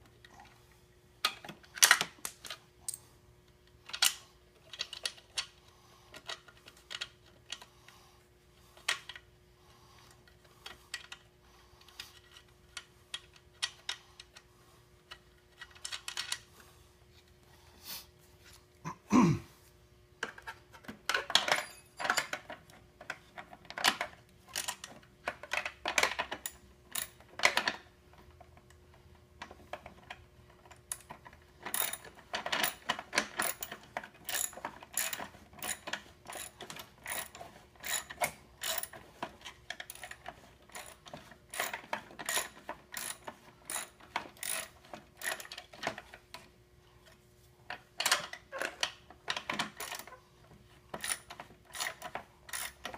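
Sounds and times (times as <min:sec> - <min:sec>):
small parts and tools clinking: 0:15.1 - 0:16.5, 0:20.2 - 0:28.7, 0:29.4 - 0:46.5, 0:47.7 - 0:50.2, 0:50.9 - 0:52.9.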